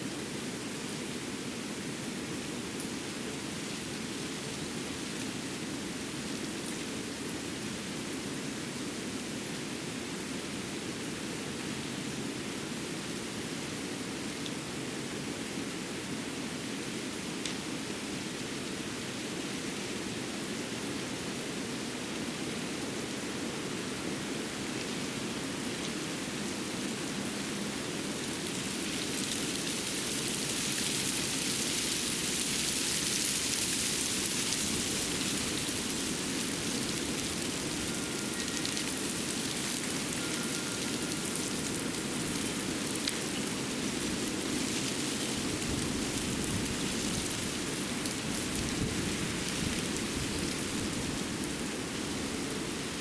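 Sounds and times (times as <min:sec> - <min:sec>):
forest rushing hiss: 0:00.0 - 0:53.0.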